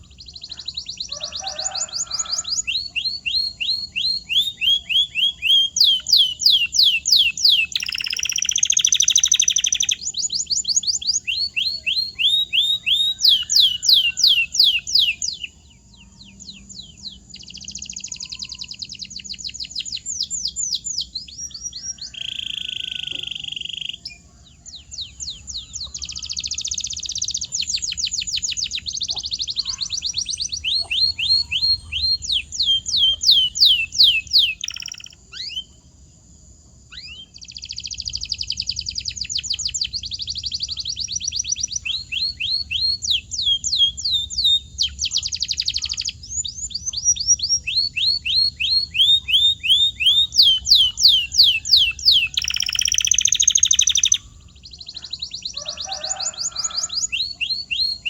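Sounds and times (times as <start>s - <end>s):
canary singing: 0.0s - 35.8s, 36.9s - 58.0s.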